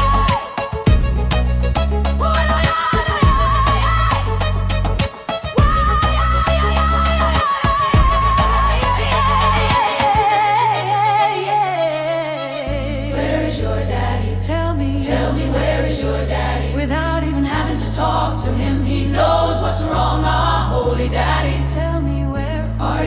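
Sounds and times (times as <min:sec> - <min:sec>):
deep bass line: 0:00.0 - 0:07.4, 0:08.0 - 0:09.8, 0:12.8 - 0:23.0
voices singing: 0:05.6 - 0:23.0.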